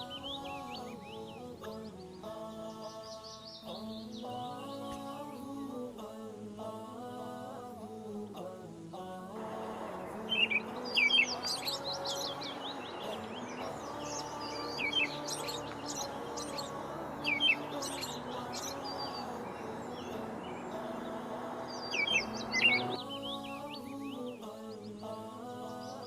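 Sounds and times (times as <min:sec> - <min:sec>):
small birds chirping: 0:00.0 - 0:26.0
low drone of held tones: 0:08.9 - 0:26.0.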